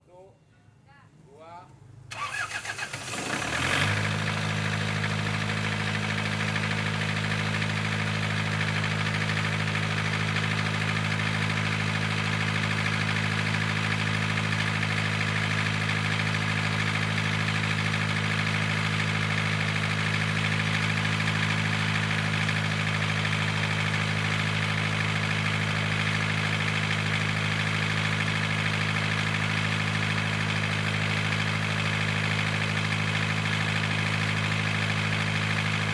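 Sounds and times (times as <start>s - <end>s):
diesel generator engine running: 2.1s - 35.9s.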